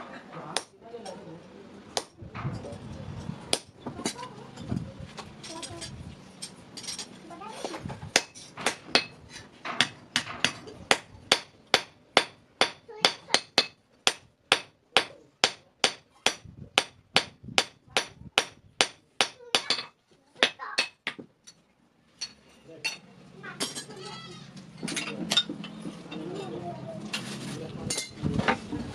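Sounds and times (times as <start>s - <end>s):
hammer striking metal on anvil: 8.1s - 9.2s, 9.8s - 21.2s.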